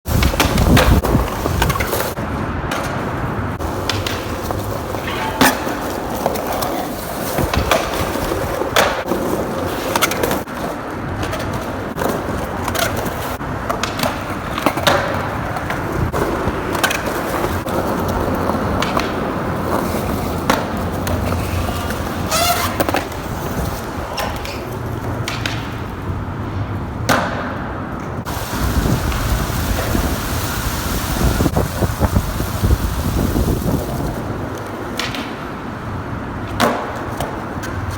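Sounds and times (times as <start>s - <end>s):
wind buffeting microphone: 0.0s - 2.7s, 28.2s - 34.7s
skateboard wheels rolling on pavement: 0.0s - 37.9s
skateboard clacking on ground: 0.1s - 28.4s, 33.9s - 37.9s.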